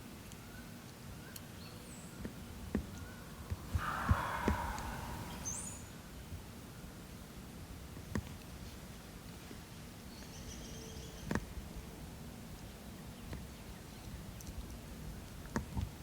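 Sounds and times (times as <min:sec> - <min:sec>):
high bird chirps: 0:03.0 - 0:06.0
brief rushing noise: 0:03.3 - 0:06.0.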